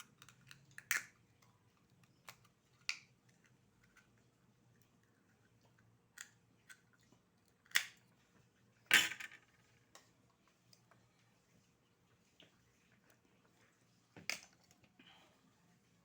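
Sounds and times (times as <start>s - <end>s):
oyster shells clicking and cracking: 0.0s - 4.0s, 7.6s - 8.0s.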